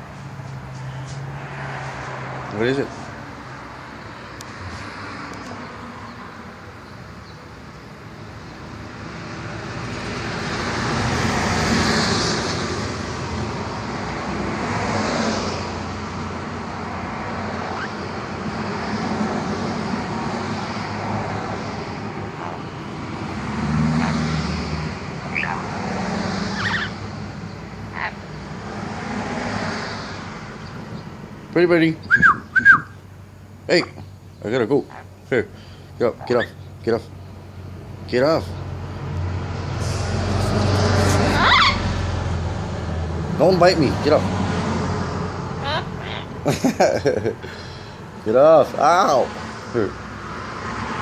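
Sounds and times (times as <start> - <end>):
road traffic rumble: 0.0 - 51.0.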